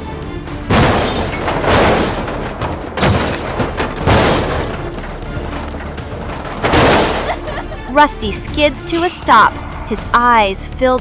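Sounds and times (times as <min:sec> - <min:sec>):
heavy crashing impact thuds: 0:00.7 - 0:07.9.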